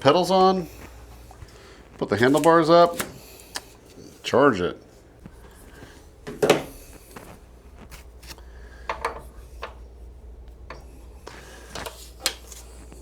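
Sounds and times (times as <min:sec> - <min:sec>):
metal bike parts clinking and knocking: 0:08.8 - 0:09.8.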